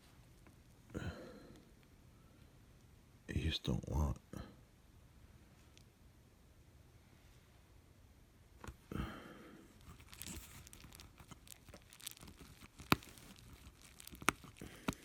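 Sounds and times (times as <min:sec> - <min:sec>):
plastic film crinkling and tearing: 0:09.7 - 0:15.0.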